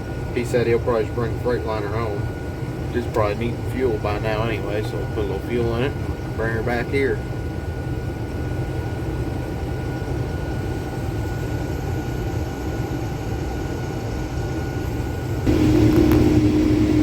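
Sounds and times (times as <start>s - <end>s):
thin steady whine: 0.0s - 17.0s
engine rumble: 14.8s - 17.0s.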